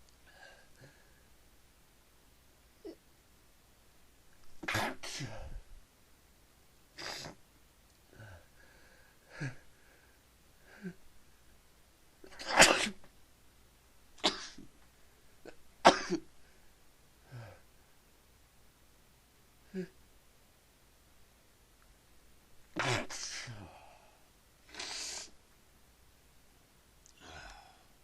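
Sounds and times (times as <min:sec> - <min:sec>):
person sneezing: 0:04.6 - 0:05.6, 0:07.0 - 0:07.4, 0:12.3 - 0:13.1, 0:14.2 - 0:14.7, 0:22.8 - 0:23.7, 0:24.7 - 0:25.4.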